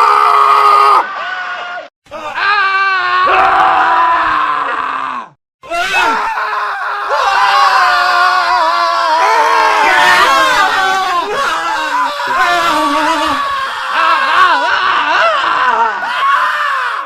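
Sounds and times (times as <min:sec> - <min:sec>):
men screaming: 0:00.0 - 0:17.0.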